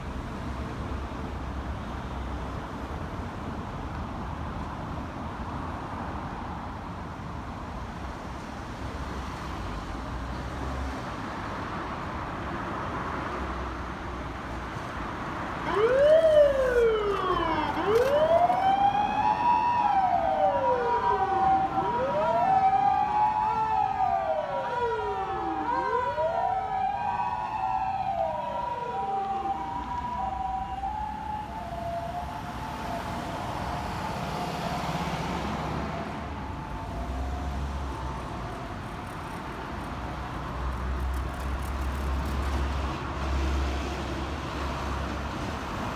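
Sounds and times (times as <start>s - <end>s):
traffic noise: 0.0s - 45.9s
fire engine siren wailing: 15.6s - 41.6s.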